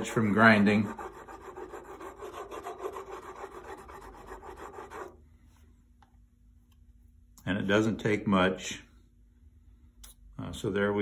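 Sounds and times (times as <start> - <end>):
chisel rubbing on sharpening stone: 0.6 - 5.1.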